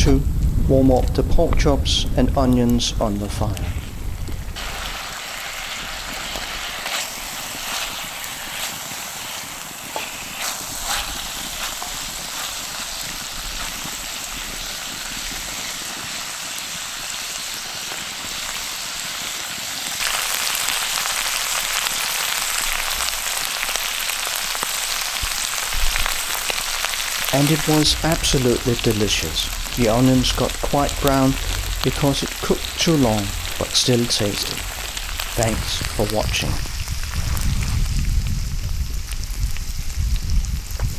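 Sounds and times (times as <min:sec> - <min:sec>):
meat sizzling in a pan: 0:03.5 - 0:40.9
sharp crackles: 0:19.8 - 0:40.9.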